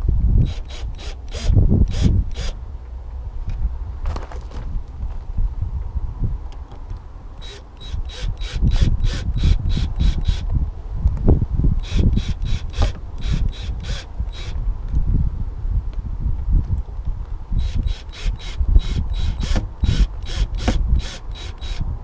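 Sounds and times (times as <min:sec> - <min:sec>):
wind rumble on microphone: 0:00.0 - 0:22.0
screws rasping turned by hand: 0:00.4 - 0:02.6, 0:07.4 - 0:10.5, 0:11.8 - 0:14.6, 0:17.6 - 0:21.9.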